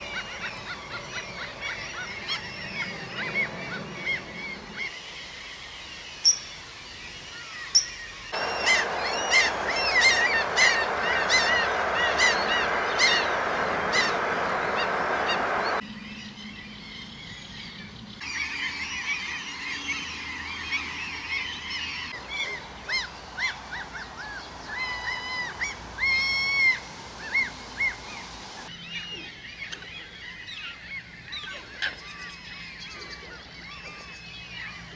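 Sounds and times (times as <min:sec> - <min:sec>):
birds honking calls: 0:08.4 - 0:15.8, 0:20.7 - 0:28.7
steady rushing noise: 0:08.4 - 0:15.8, 0:22.2 - 0:28.7.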